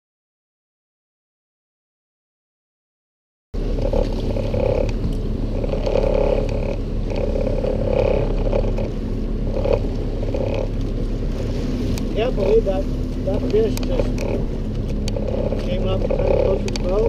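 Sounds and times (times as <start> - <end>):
boat motor running: 3.6 - 17.0
water noise: 3.6 - 17.0
wind: 3.6 - 17.0.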